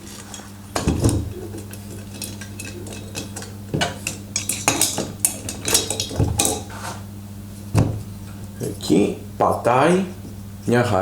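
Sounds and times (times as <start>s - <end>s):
metal clinking and rattling: 0.0s - 6.7s.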